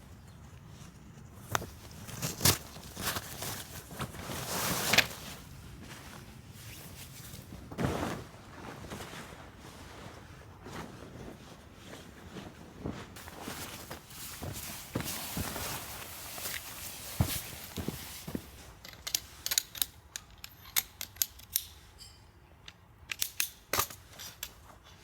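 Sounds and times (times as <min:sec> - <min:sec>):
shuffling in snow: 0:00.6 - 0:18.8
footsteps crunching in snow: 0:00.7 - 0:18.8.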